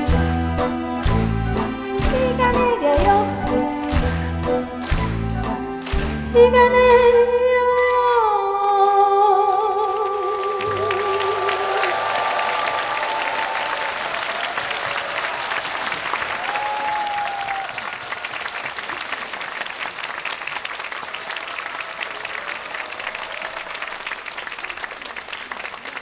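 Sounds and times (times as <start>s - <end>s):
audience applauding: 0.0s - 7.1s, 8.4s - 26.0s
voices calling out: 9.8s - 13.5s.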